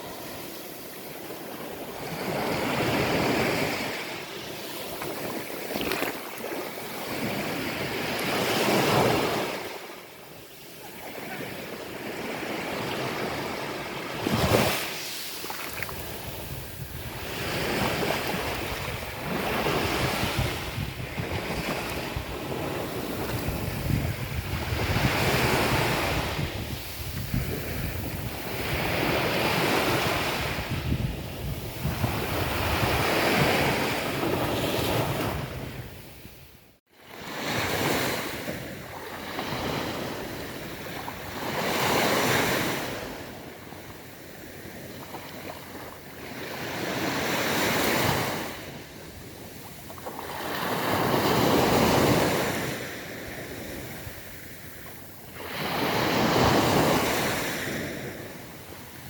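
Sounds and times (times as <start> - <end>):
wind rumble on microphone: 15.7 - 36.6.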